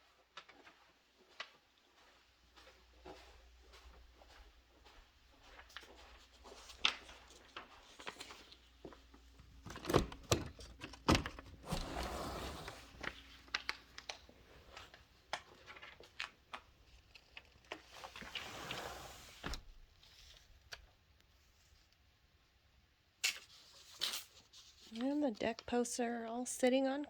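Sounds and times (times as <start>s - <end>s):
footsteps in a small room: 0.0s - 9.6s
handling clicks and knocks: 9.4s - 11.9s.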